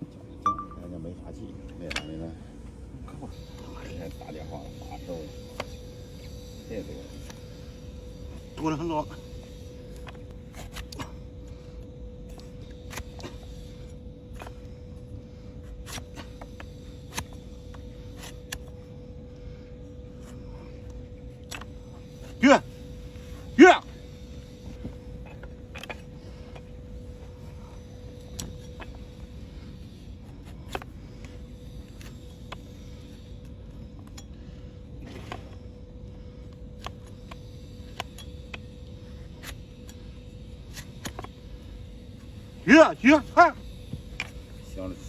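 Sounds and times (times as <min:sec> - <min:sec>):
faint steady hum: 0:00.0 - 0:45.0
hoof trimming tools snapping: 0:15.8 - 0:18.8, 0:21.4 - 0:22.4, 0:25.2 - 0:26.7, 0:39.3 - 0:40.0, 0:40.7 - 0:41.4
hoof trimming tools clicking: 0:25.2 - 0:26.7.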